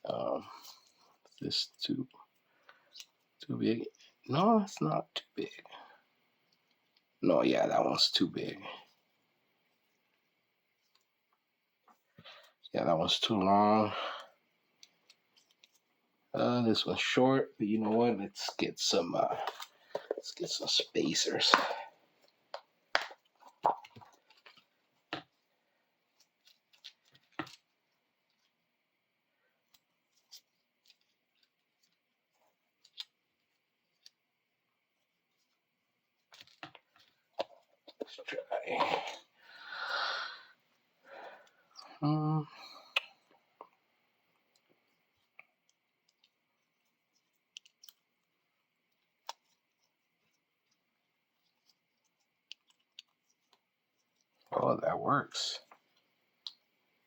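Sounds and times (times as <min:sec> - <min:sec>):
small parts clicking and tapping: 0:29.6 - 0:34.2, 0:44.5 - 0:54.5.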